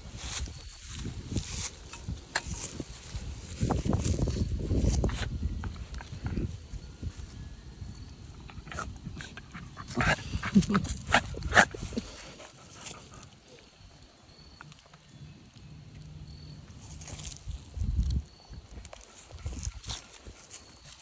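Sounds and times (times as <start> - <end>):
rustling in undergrowth: 0.0 - 8.3, 9.6 - 21.0
dog sniffing and snuffling: 8.6 - 13.9, 18.8 - 21.0.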